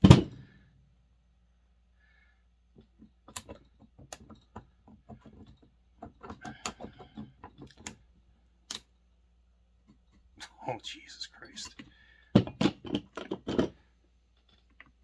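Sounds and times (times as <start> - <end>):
metal parts clicking and knocking: 2.7 - 8.1, 11.6 - 15.0.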